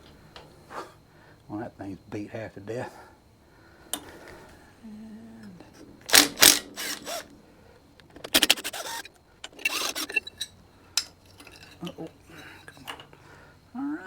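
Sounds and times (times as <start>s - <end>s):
hand tools scraping and clicking metal: 5.4s - 7.3s, 8.0s - 13.2s.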